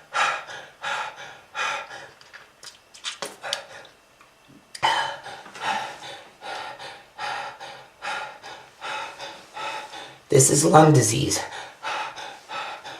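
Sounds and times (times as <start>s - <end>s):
laboured rasping breathing: 0.0s - 2.4s, 3.4s - 4.0s, 4.8s - 10.3s, 11.4s - 12.9s.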